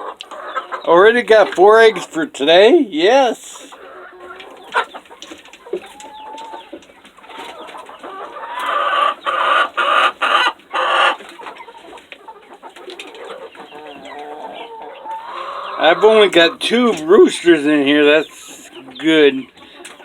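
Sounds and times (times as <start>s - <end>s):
chickens clucking: 0.0s - 20.0s
harsh chicken squawks: 7.3s - 11.8s, 13.2s - 16.7s.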